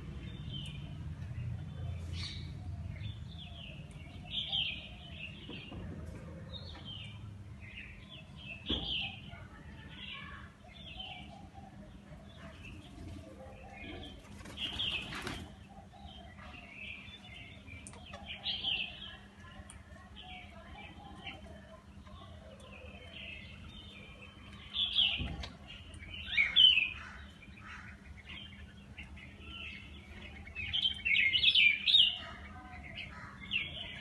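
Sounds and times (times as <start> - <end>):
small birds chirping: 0.0 - 34.0
wings flapping: 14.2 - 15.6.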